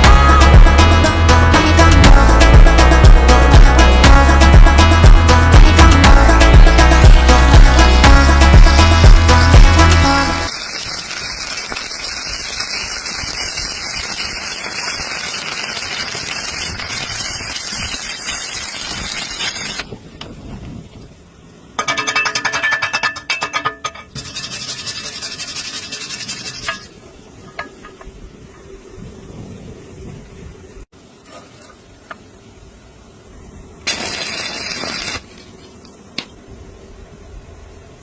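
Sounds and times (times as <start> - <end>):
welding arc crackling sizzle: 0.0 - 21.1, 24.1 - 28.2, 33.8 - 36.3
rapid tapping or scraping: 21.8 - 28.0.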